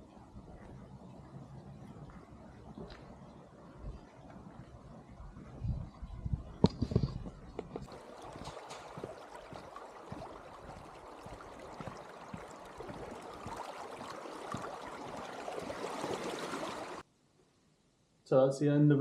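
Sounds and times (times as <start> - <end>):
running water: 6.7 - 17.0.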